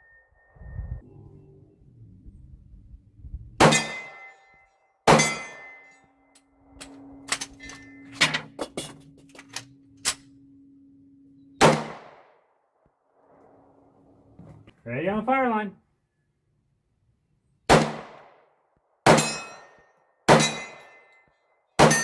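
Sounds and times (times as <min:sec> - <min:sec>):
pistol shots: 0:03.6 - 0:04.3, 0:05.1 - 0:05.7, 0:11.6 - 0:12.3, 0:17.7 - 0:19.6, 0:20.3 - 0:21.0, 0:21.8 - 0:22.0.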